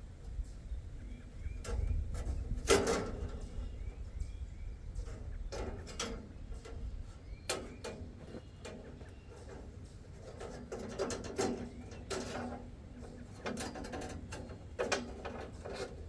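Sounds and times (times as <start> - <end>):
knocks and clatters: 5.0 - 16.0.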